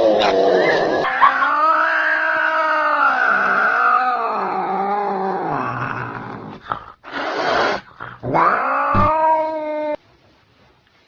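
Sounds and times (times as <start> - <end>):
angry cat yowling: 0.0 - 6.4, 8.3 - 10.0.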